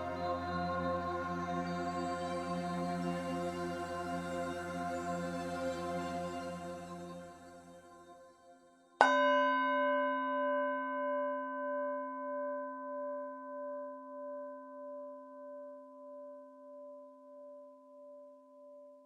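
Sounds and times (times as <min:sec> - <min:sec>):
singing bowl ringing: 0:09.0 - 0:17.2.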